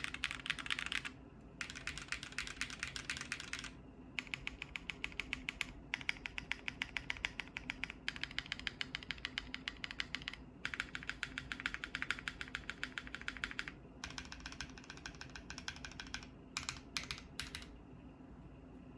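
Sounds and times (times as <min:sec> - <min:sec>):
mechanical keyboard typing: 0:00.0 - 0:17.7.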